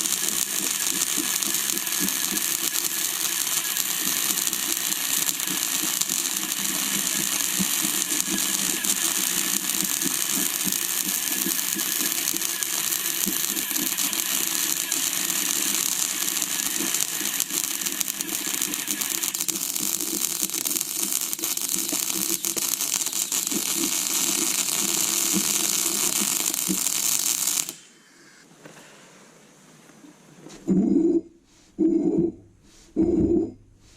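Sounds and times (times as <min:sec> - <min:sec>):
metal lathe running: 0:00.0 - 0:27.1.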